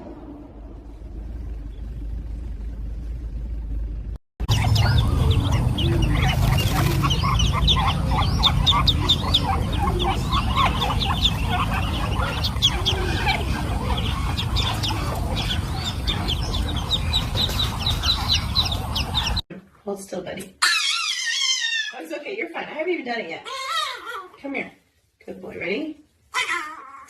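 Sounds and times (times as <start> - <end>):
steady low rumble: 0.0 - 19.4
flock of birds chirping: 4.4 - 19.4.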